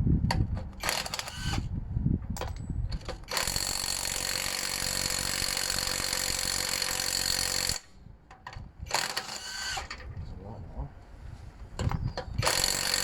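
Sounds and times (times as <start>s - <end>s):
cordless impact driver whining: 0.8s - 1.7s, 8.9s - 9.9s, 12.0s - 13.0s.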